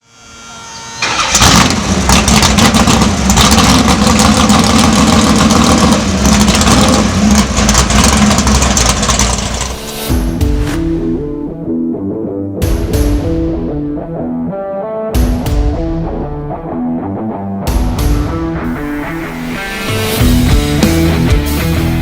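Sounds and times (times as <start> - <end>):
car engine starting and running: 0.8 - 11.7, 17.7 - 22.0.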